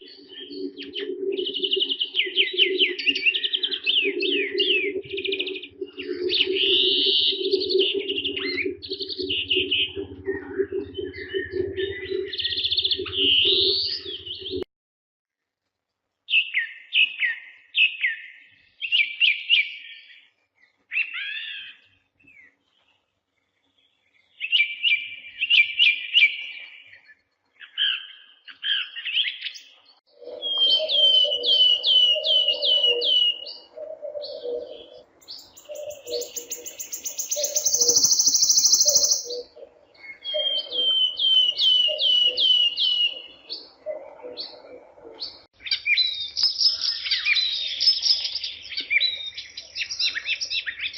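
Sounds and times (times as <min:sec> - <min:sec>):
birds chirping and singing: 0:00.0 - 0:14.6, 0:16.3 - 0:50.9
high buzzing bird trill: 0:35.2 - 0:39.5.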